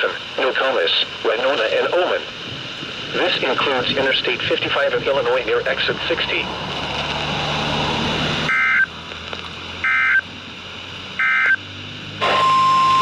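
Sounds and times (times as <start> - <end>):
radio hiss: 0.0 - 7.3
raspy buzzing data bursts: 9.8 - 10.2, 11.2 - 11.6.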